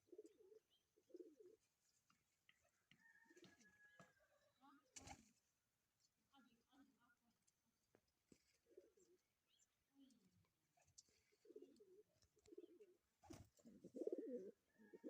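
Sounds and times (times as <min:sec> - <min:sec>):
pigeon cooing: 0:00.0 - 0:01.6, 0:08.6 - 0:09.2, 0:11.2 - 0:15.0.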